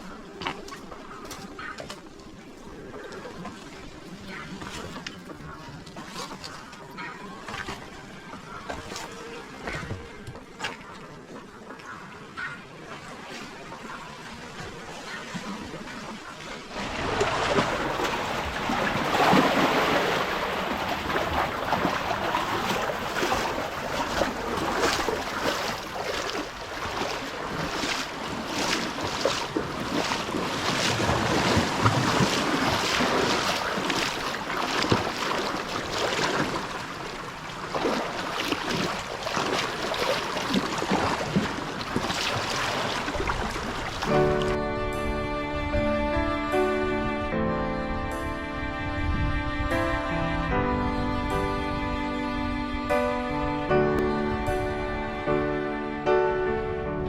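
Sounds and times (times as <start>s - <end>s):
sea waves splashing on rocks: 13.3s - 44.6s
wind on microphone: 40.8s - 55.2s.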